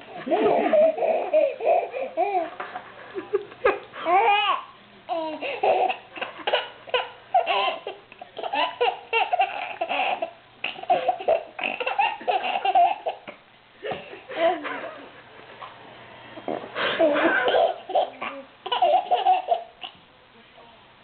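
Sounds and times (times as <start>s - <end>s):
baby laughing hard: 0.3s - 2.6s, 3.6s - 13.4s, 17.0s - 20.0s.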